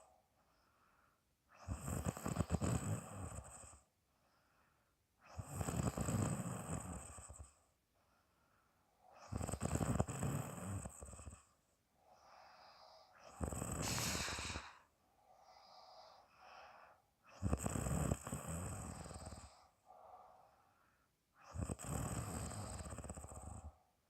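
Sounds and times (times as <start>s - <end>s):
woman snoring: 1.6s - 3.7s, 5.4s - 7.4s, 9.2s - 11.4s, 12.5s - 14.9s, 17.4s - 19.6s, 21.5s - 23.7s
breath blown out through mouth: 13.8s - 14.8s.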